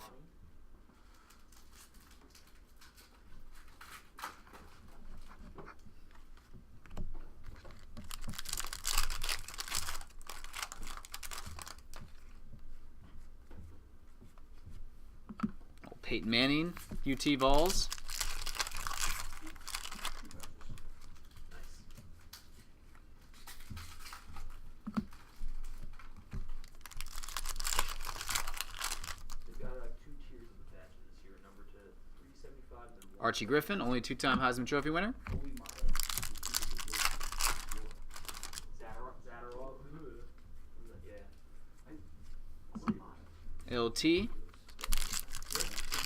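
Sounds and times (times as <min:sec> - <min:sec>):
cards rustling and clicking: 0:07.4 - 0:12.4, 0:16.2 - 0:29.5, 0:34.8 - 0:38.7, 0:44.6 - 0:46.0
wrapper crinkling: 0:07.4 - 0:12.4, 0:16.2 - 0:21.7, 0:23.4 - 0:29.6, 0:35.4 - 0:38.9, 0:44.5 - 0:46.0.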